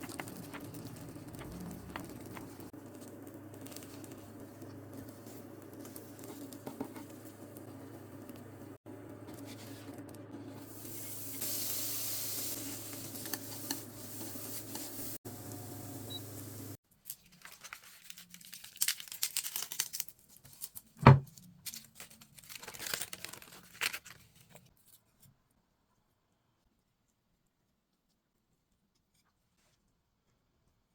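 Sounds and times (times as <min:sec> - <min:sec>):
crinkling: 0:00.0 - 0:08.5, 0:16.9 - 0:25.2
steady hum with hiss: 0:09.7 - 0:16.8.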